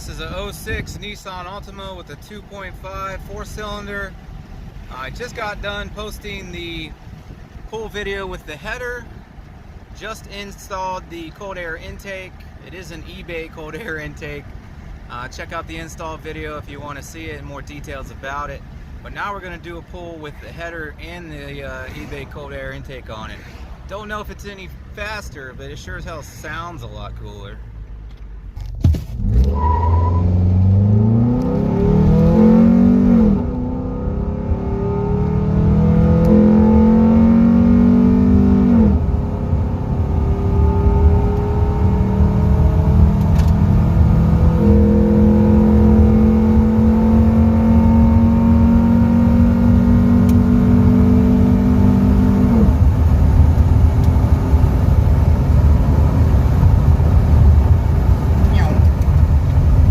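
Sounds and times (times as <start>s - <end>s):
engine and road rumble: 0.0s - 59.9s
car engine accelerating: 29.1s - 59.9s.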